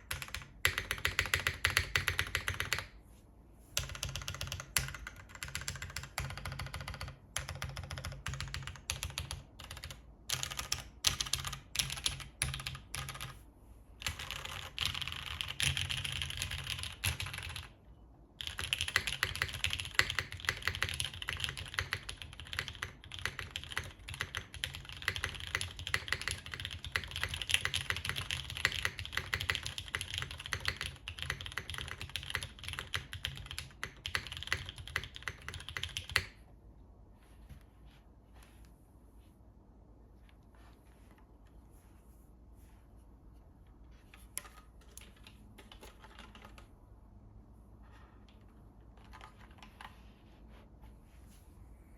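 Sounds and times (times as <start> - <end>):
mechanical keyboard typing: 0.0 - 3.0, 3.8 - 13.4, 14.0 - 17.8, 18.4 - 36.4, 44.4 - 46.7, 48.9 - 50.0.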